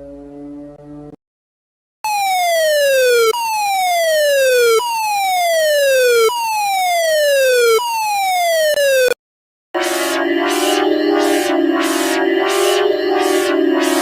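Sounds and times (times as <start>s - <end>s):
buzzy alarm tone sliding down: 9.8s - 14.0s.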